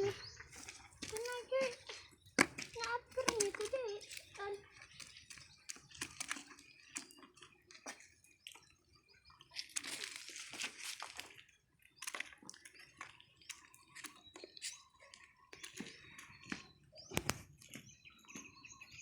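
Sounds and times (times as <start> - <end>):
shrimp rustling: 0.0 - 8.1, 9.5 - 16.5
wet clicks and crackles of shrimp: 0.0 - 19.0.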